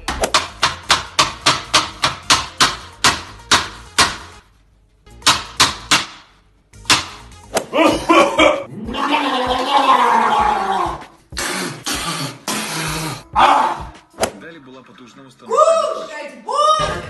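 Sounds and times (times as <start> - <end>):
sharp knocking strikes: 0.0 - 4.4, 5.2 - 7.7.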